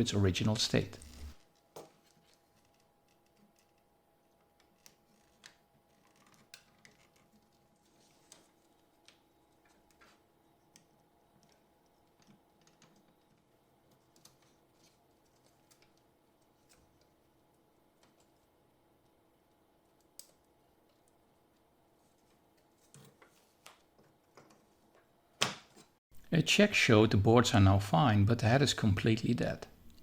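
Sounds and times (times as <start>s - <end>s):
low steady hum: 0.0s - 1.4s.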